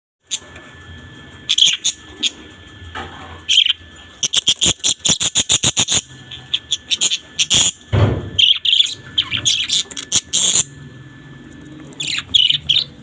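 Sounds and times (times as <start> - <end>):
fast clicking chirps: 1.4 - 2.8, 3.4 - 10.7, 11.4 - 13.0
budgerigars chirping: 1.5 - 2.4, 3.5 - 7.8, 8.4 - 10.7, 12.0 - 13.0.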